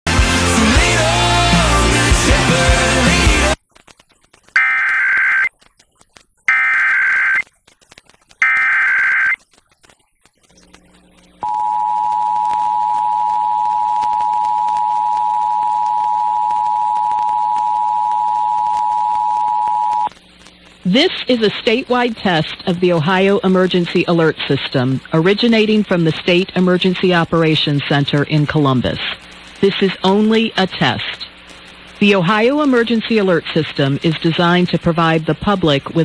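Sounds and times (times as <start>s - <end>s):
warbling digital data tones: 4.5s - 5.6s, 6.4s - 7.5s, 8.4s - 20.8s
two-tone attention signal: 11.4s - 20.1s.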